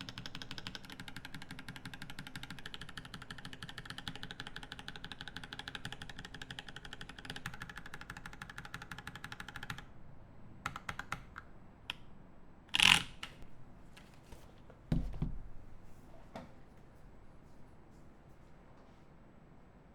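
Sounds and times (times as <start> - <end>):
mechanical keyboard typing: 0.0 - 9.9, 10.6 - 11.5, 12.7 - 13.4.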